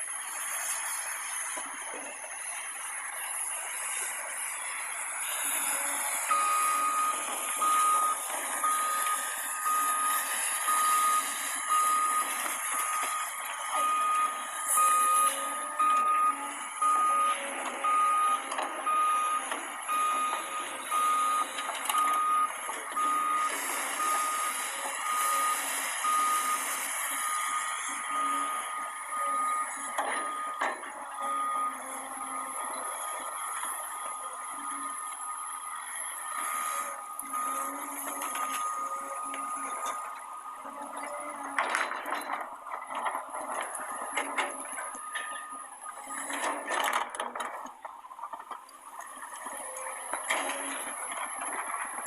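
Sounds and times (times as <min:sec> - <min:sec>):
reversing alarm beeping: 0:03.9 - 0:47.6.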